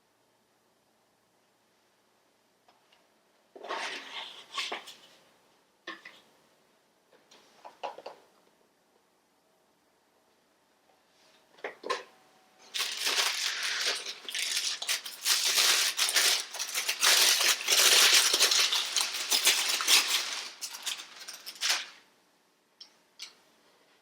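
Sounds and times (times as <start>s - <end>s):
packaging wrap crinkling: 12.7s - 22.0s.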